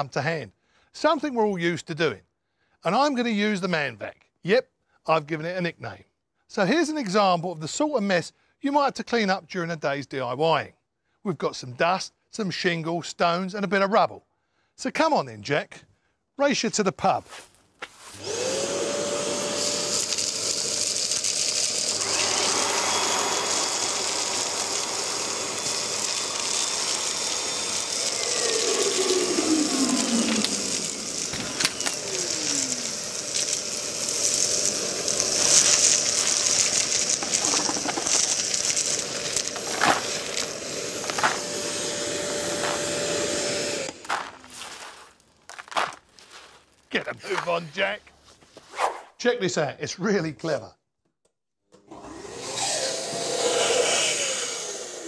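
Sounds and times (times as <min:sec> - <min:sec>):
vacuum cleaner running: 0:18.2 - 0:44.5, 0:51.8 - 0:55.0
debris rattling in hose: 0:19.5 - 0:46.9.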